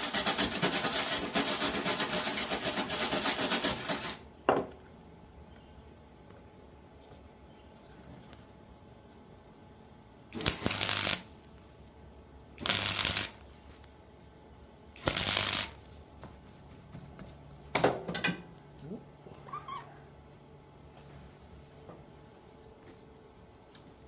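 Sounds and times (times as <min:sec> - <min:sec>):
welding arc bursts: 0:10.3 - 0:11.5, 0:12.6 - 0:13.6, 0:15.0 - 0:16.0.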